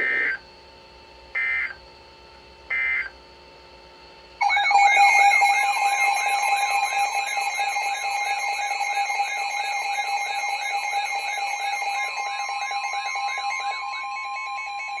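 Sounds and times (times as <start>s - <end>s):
fast warbling alarm: 0.0s - 0.4s, 4.4s - 15.0s.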